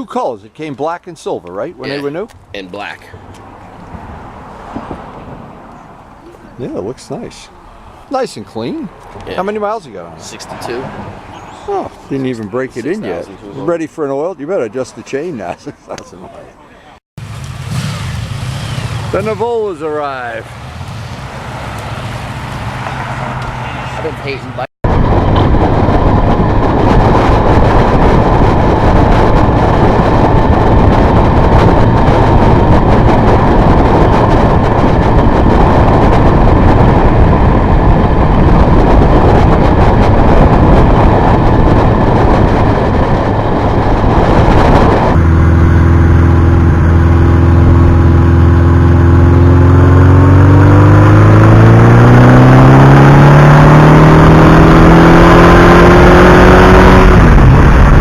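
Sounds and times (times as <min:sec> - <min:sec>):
wind and road noise: 0:00.0 - 0:58.0
motorcycle engine accelerating: 0:17.2 - 0:58.0.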